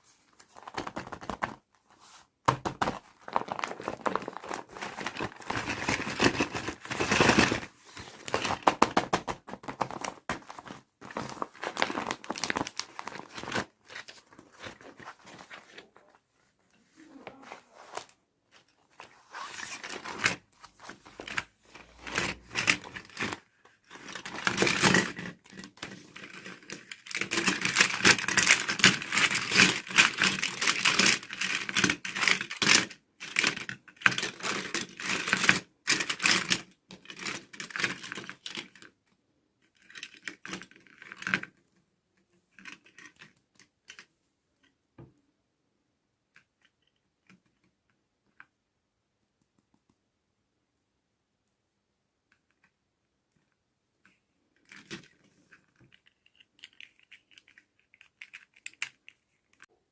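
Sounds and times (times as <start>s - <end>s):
packaging crinkling and tearing: 2.8s - 16.0s.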